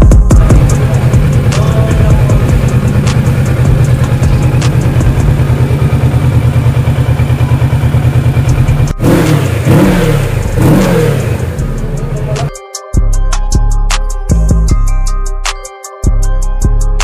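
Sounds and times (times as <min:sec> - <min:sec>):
motorcycle engine idling: 0:00.0 - 0:12.5
motorcycle engine revving: 0:00.3 - 0:12.5.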